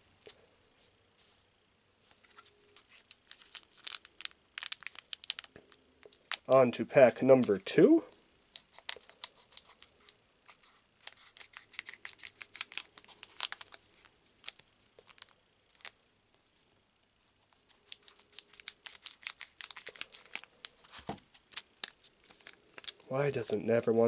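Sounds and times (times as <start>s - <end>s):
foil wrapper crinkling and tearing: 2.8s - 6.5s, 8.6s - 16.0s, 17.5s - 23.1s.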